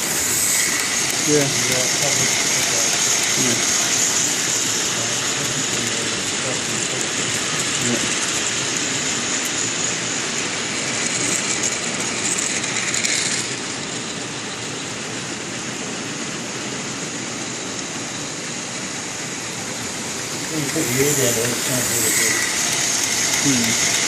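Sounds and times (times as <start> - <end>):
high hiss: 0.0 - 8.3, 19.2 - 24.0
model train rolling rattle: 0.0 - 24.0.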